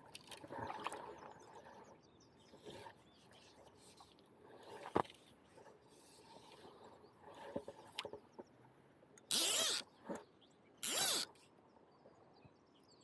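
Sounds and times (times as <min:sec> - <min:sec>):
reel click: 0:09.2 - 0:09.8, 0:10.8 - 0:11.4
fishing reel ratchet buzzing: 0:09.3 - 0:09.8, 0:10.8 - 0:11.3.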